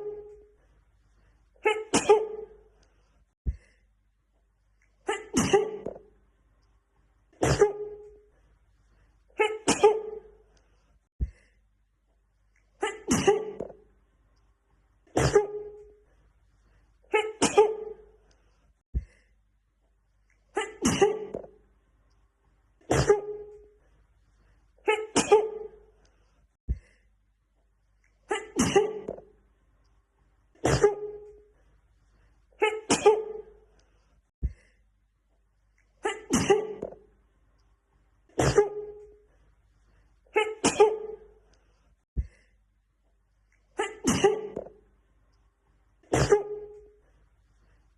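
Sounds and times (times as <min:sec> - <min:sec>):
woman sneezing: 0:01.6 - 0:02.6, 0:05.0 - 0:06.0, 0:07.4 - 0:08.2, 0:09.4 - 0:10.4, 0:12.8 - 0:13.8, 0:15.1 - 0:15.8, 0:17.1 - 0:18.0, 0:20.5 - 0:21.5, 0:22.9 - 0:23.6, 0:24.8 - 0:25.8, 0:28.3 - 0:29.2, 0:30.6 - 0:31.3, 0:32.6 - 0:33.5, 0:36.0 - 0:36.9, 0:38.3 - 0:39.0, 0:40.3 - 0:41.3, 0:43.8 - 0:44.7, 0:46.1 - 0:46.9.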